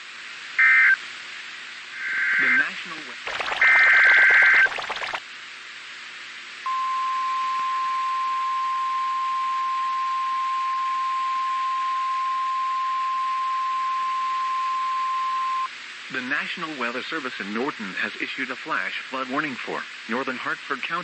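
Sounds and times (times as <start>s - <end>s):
faint radio hiss: 0.0s - 6.6s, 15.7s - 21.0s
high-pitched alarm beep: 3.3s - 5.2s.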